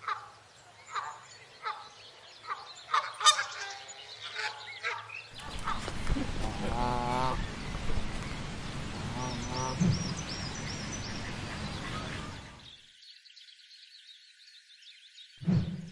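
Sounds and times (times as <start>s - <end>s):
goose honking: 2.9s - 7.6s, 8.7s - 10.2s, 10.9s - 12.6s
steady rushing noise: 5.4s - 12.6s.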